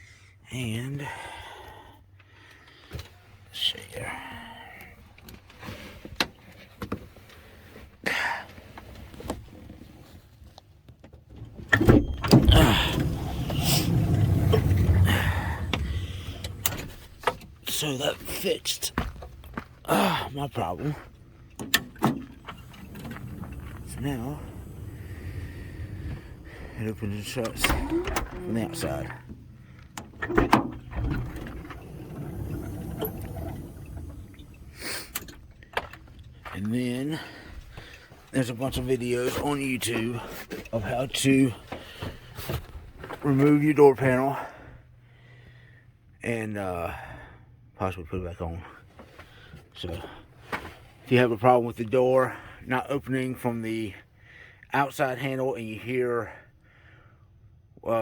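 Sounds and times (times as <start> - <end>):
low steady rumble: 12.2 - 17.9, 20.4 - 37.0
sliding door motor running: 12.3 - 16.8, 22.3 - 29.3, 30.1 - 35.2.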